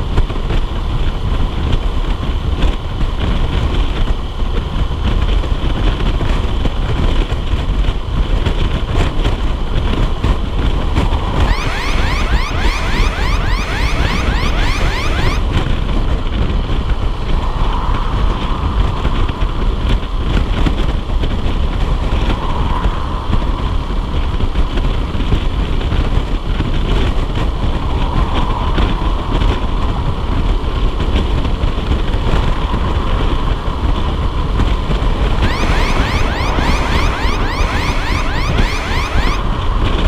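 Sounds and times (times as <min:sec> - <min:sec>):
wind noise on microphone: 0:00.0 - 0:12.9, 0:15.2 - 0:40.0.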